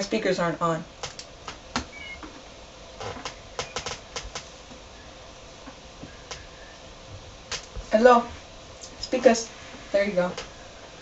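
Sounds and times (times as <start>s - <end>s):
sharp clicks: 1.0s - 1.9s, 3.2s - 4.5s.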